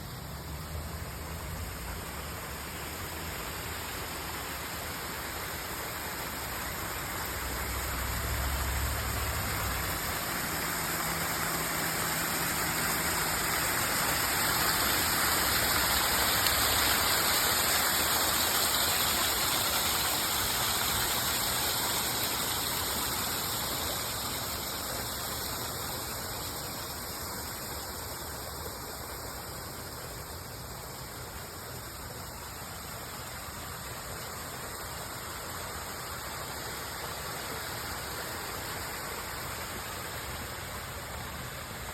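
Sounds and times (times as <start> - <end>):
waterfall splashing over rocks: 0.0 - 41.9.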